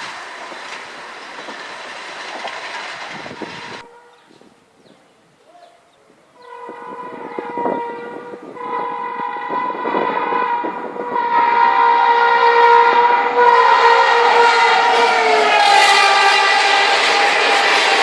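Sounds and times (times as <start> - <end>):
train wheels clattering on rails: 0.0 - 3.9, 13.5 - 18.0
train horn blast: 6.4 - 18.0.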